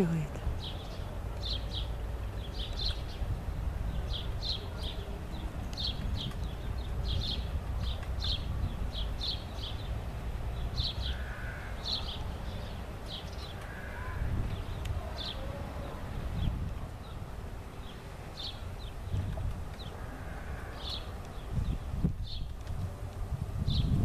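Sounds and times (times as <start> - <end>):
low wind rumble: 0.0 - 24.0.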